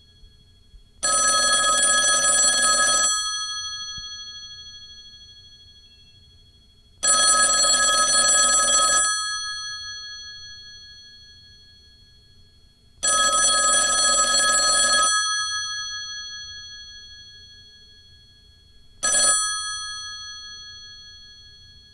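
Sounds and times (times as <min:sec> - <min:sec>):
telephone bell ringing: 0:01.0 - 0:05.4, 0:07.0 - 0:11.3, 0:13.0 - 0:18.0, 0:19.0 - 0:21.9.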